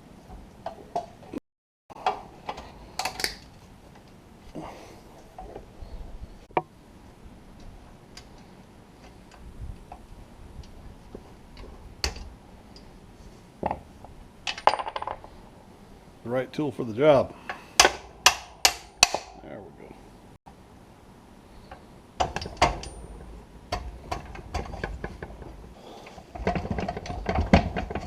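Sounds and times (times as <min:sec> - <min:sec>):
hand tools clicking and tapping: 0:17.4 - 0:19.4.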